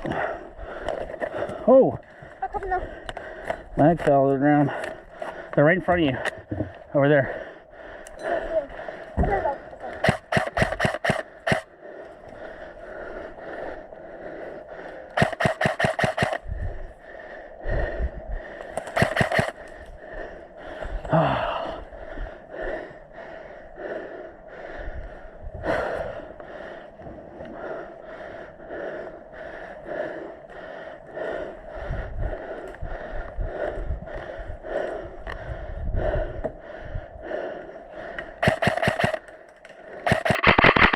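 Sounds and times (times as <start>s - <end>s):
heavy breathing: 0.0s - 40.9s
airsoft rifle firing shots: 10.0s - 11.6s, 15.2s - 16.4s, 19.0s - 19.6s, 38.4s - 39.2s, 40.0s - 40.9s.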